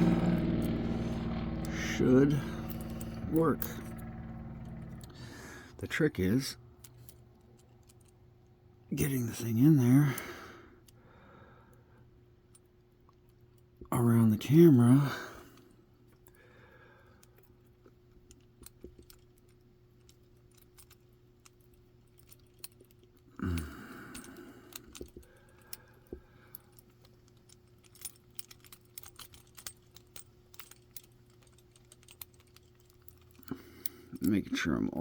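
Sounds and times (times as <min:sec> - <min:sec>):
low steady hum: 0:00.0 - 0:35.0
metallic clicks and scrapes in lock: 0:17.2 - 0:34.7.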